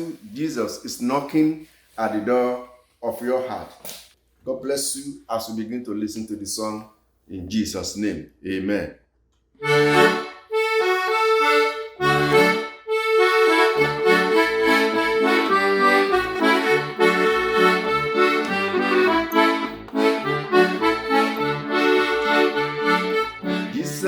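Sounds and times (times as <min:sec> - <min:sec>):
sustained keyboard chords: 0:09.6 - 0:24.0.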